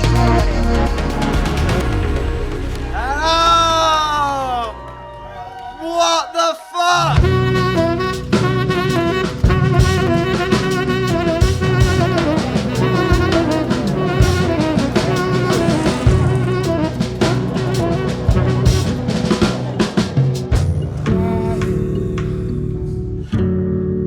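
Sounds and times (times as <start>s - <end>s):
upbeat jazzy music: 0.0s - 2.9s, 7.2s - 23.2s
drum kit beat: 0.0s - 3.3s, 7.2s - 23.0s
saxophone: 0.0s - 3.8s, 7.1s - 23.3s
brass: 7.0s - 21.9s.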